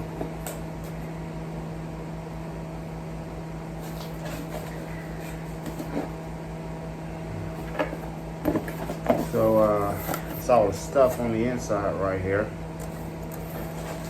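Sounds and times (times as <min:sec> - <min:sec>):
appliance humming: 0:00.0 - 0:14.0
cardboard box rustling: 0:03.8 - 0:06.3, 0:07.6 - 0:11.2, 0:13.0 - 0:14.0.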